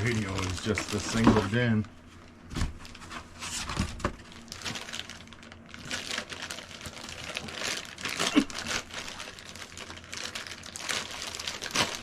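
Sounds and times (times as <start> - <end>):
packaging crinkling: 0.0 - 12.0.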